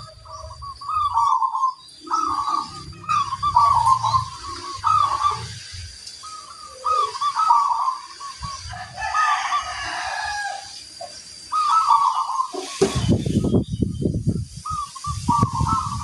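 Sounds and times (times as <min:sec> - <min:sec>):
doves cooing: 0:00.0 - 0:13.1
rooster crowing: 0:08.7 - 0:10.8.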